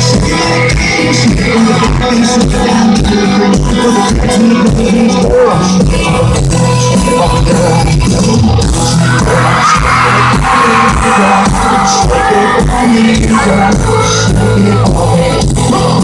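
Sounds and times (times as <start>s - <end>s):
live country band playing: 0.0s - 16.0s
crowd cheering and yelling: 8.2s - 16.0s
high-pitched screams: 8.9s - 15.1s.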